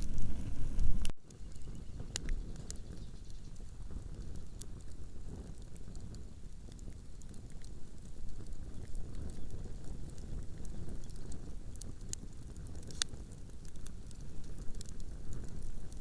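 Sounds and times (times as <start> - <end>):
bonfire crackling and popping: 0.0 - 16.0
fire low rumble: 0.0 - 16.0.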